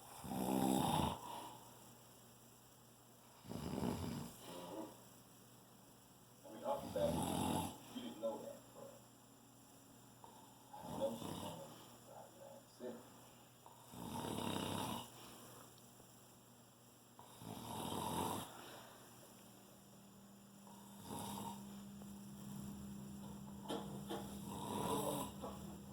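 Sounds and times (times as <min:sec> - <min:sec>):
person snoring: 0:00.2 - 0:01.6, 0:06.8 - 0:07.8, 0:10.7 - 0:11.8, 0:13.7 - 0:15.1, 0:17.2 - 0:18.8, 0:20.6 - 0:21.8, 0:24.3 - 0:25.6.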